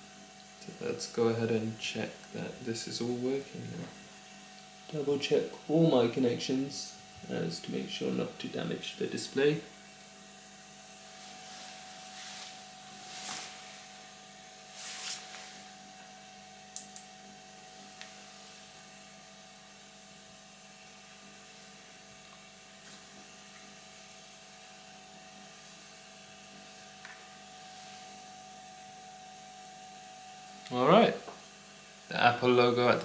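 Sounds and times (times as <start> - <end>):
electrical whine and hum: 0.0 - 33.0
soft handling rustles: 11.0 - 15.8.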